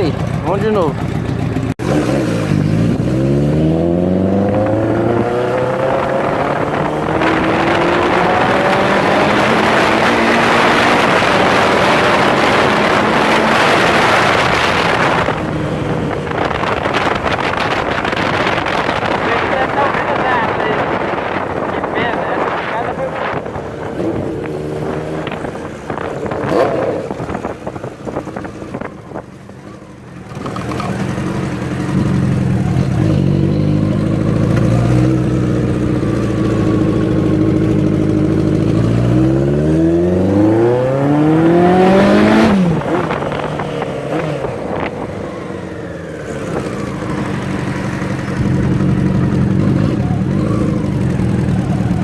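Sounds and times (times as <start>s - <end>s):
motorcycle engine running: 0.0s - 52.0s.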